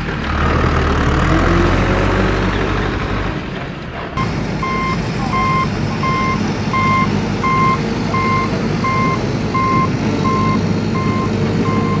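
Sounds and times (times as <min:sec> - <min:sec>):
engine rumbling: 0:00.0 - 0:12.0
reversing alarm beeping: 0:04.2 - 0:12.0.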